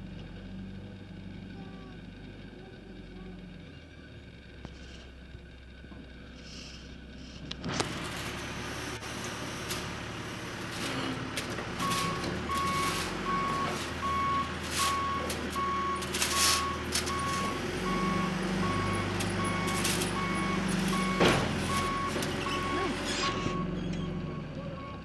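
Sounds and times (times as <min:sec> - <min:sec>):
diesel engine running: 0:00.0 - 0:25.0
backup alarm beeping: 0:11.8 - 0:25.0.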